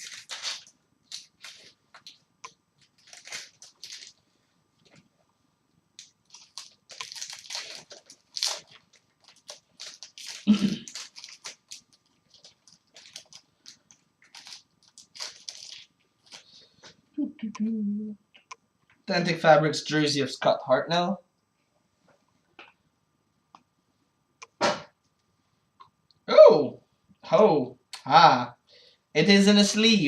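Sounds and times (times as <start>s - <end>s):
foil wrappers crinkling: 0.0s - 2.2s, 2.8s - 5.0s, 6.0s - 16.7s.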